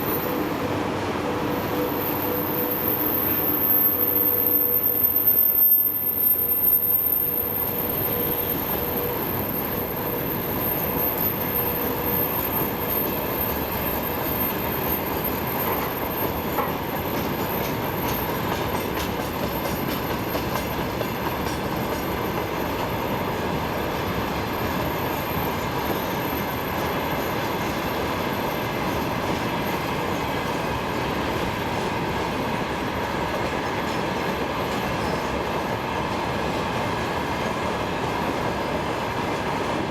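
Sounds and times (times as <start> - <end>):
wheel squeal: 1.6 - 22.8
train wheels clattering on rails: 7.3 - 39.9.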